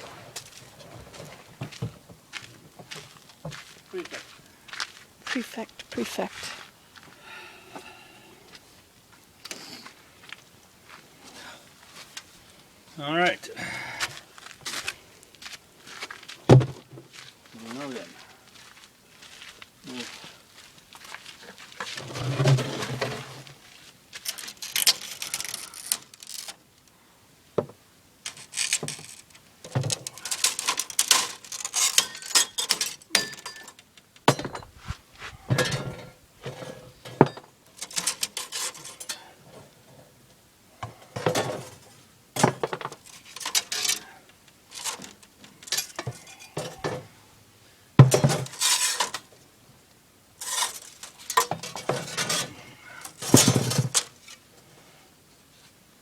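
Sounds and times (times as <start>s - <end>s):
glass pieces clinking: 30.3s - 34.7s.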